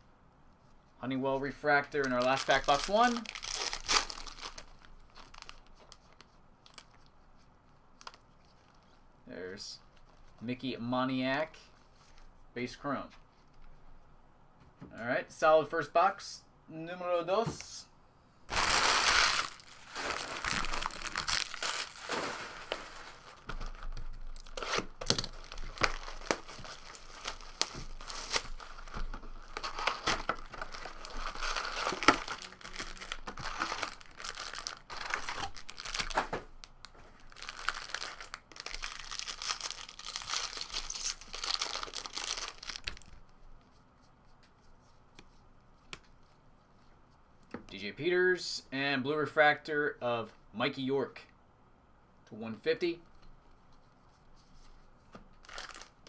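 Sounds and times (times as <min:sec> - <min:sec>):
plastic wrapping crinkling and tearing: 0:01.8 - 0:07.1, 0:08.0 - 0:08.8, 0:18.5 - 0:43.3, 0:55.3 - 0:56.0.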